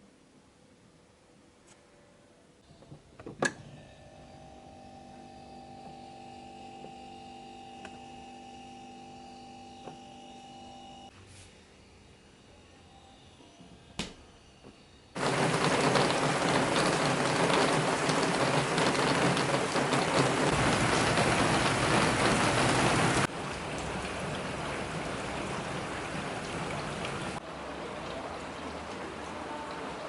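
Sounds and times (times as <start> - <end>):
water running from a tap: 15.2 - 30.0.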